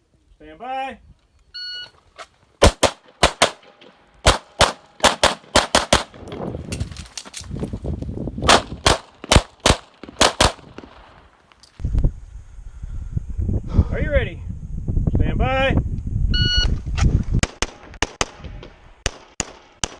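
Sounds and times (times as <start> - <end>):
pistol shots: 2.6 - 6.2, 8.5 - 11.1.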